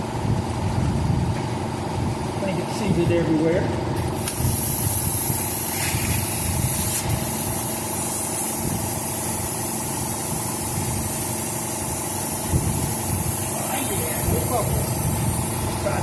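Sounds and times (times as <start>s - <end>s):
compressed air hissing: 4.0s - 16.0s.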